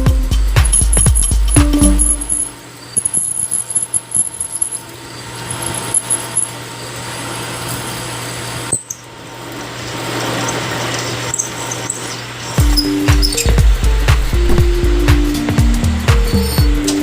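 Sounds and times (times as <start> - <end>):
drill bit cutting steel: 0.6 - 13.6
lathe motor hum: 2.2 - 17.0.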